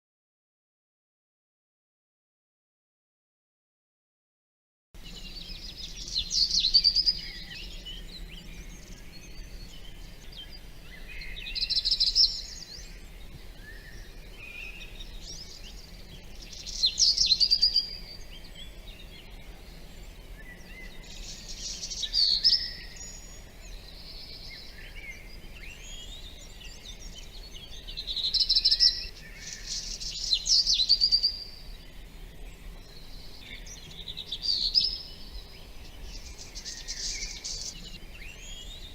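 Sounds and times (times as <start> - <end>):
songbird chirping and trilling: 5.0 - 38.9
faint bird calls: 32.8 - 38.9.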